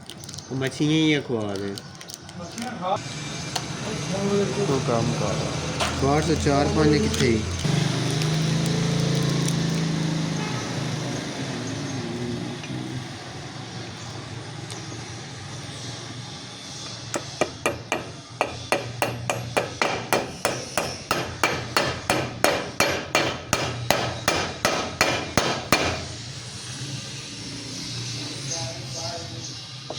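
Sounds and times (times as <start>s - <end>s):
hammer striking metal: 17.1s - 26.1s.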